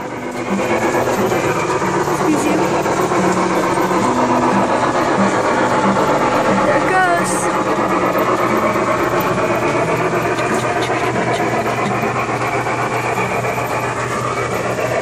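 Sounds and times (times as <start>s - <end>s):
toy train rumbling on track: 0.0s - 15.0s.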